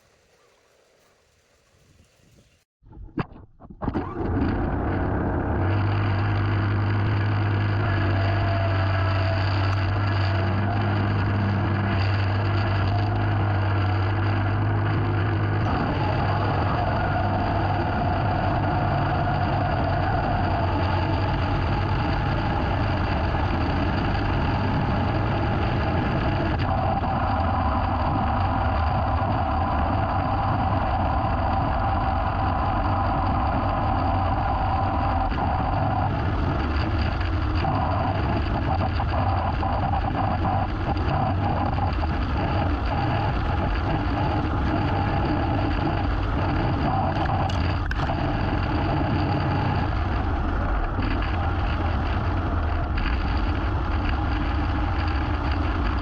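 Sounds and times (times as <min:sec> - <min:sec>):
small petrol engine running: 0:04.0 - 0:56.0.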